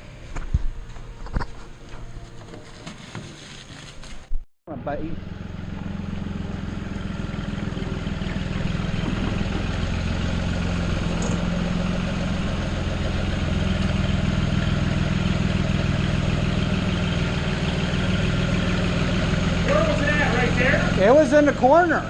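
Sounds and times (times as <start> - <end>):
tractor engine running: 4.7 - 22.0.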